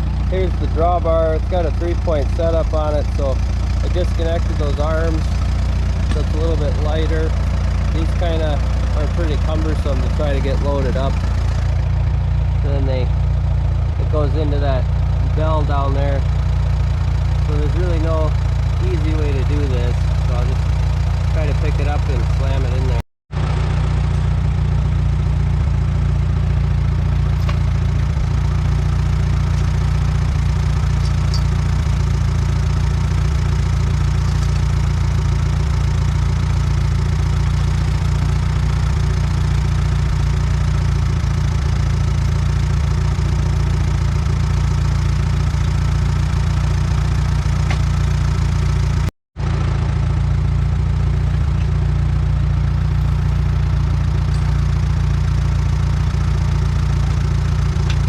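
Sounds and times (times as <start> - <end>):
tractor engine idling: 0.0 - 58.0.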